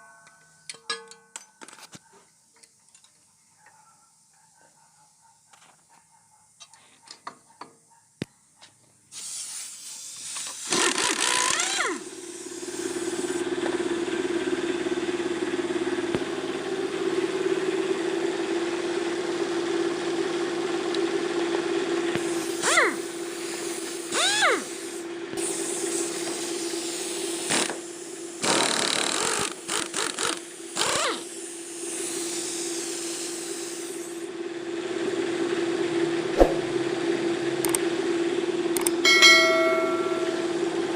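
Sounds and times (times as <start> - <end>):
machine humming: 35.8 - 40.9.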